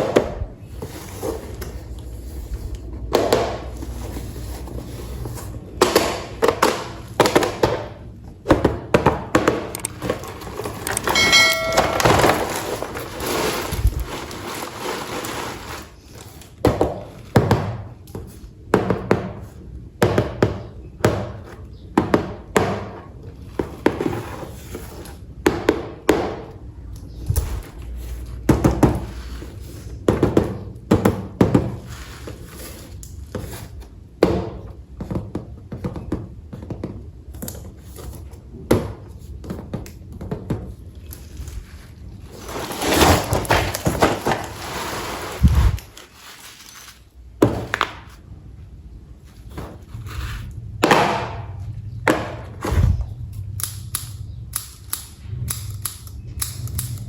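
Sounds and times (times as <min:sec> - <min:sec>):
brief ringing tone: 0:11.2 - 0:12.4.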